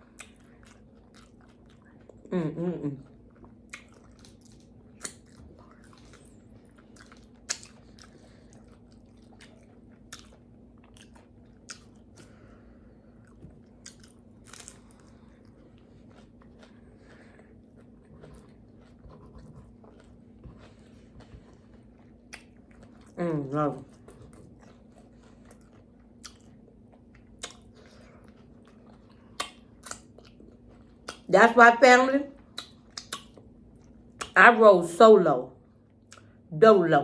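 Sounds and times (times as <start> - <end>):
person chewing: 0.0 - 31.3, 32.4 - 34.4, 36.0 - 36.4
faint steady hum: 0.0 - 37.0.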